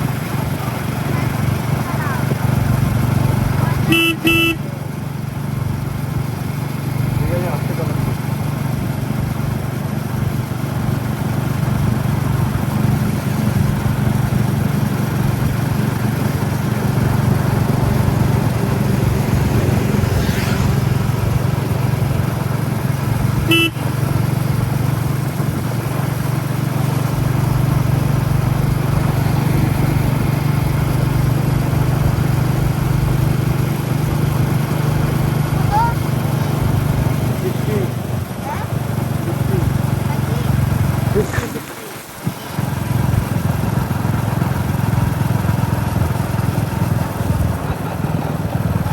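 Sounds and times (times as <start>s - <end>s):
motorcycle engine running: 0.0s - 48.9s
horn toot: 3.8s - 4.7s, 23.4s - 24.1s.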